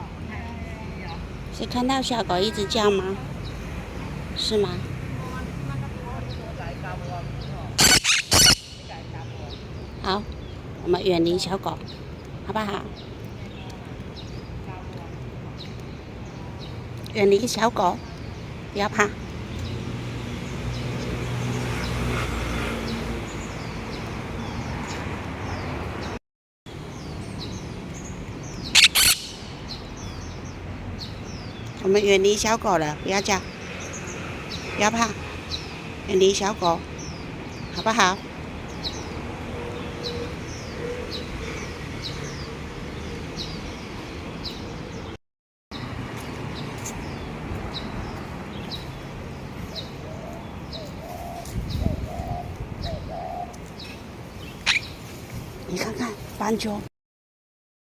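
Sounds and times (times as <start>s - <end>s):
parakeet squawking in alarm: 7.8s - 9.0s, 28.7s - 29.8s
faint bird chirps: 7.8s - 9.1s, 28.7s - 30.2s
bird chirps: 7.8s - 10.6s, 26.9s - 31.9s.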